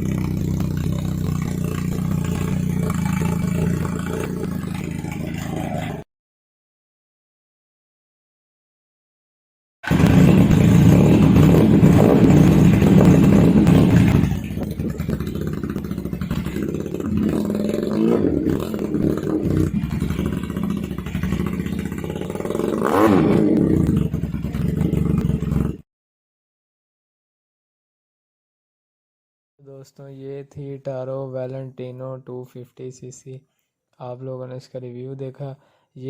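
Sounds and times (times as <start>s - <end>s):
motorcycle engine running: 0.0s - 6.0s, 9.8s - 25.8s
motorcycle throttle blips: 0.0s - 6.0s, 9.8s - 25.8s.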